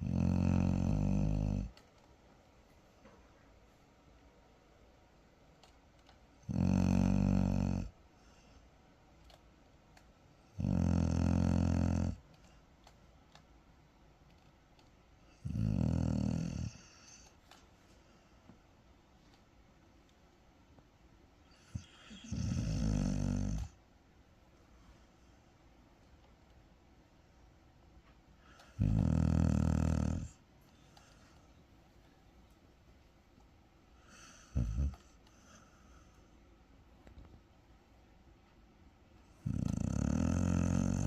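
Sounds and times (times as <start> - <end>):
dog snoring: 0.0 - 1.8, 6.4 - 8.4, 10.4 - 12.2, 15.3 - 17.3, 21.5 - 23.8, 28.4 - 31.1, 34.0 - 36.1, 39.2 - 41.0
faint room hum: 0.0 - 41.0.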